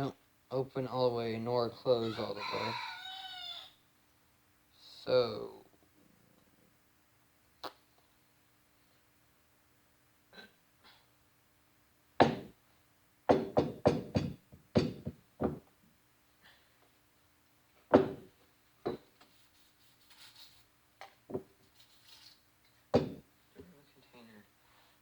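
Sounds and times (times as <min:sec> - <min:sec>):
hard objects knocking on surface: 0:13.3 - 0:15.7, 0:17.9 - 0:19.1, 0:21.3 - 0:21.5, 0:22.9 - 0:23.3.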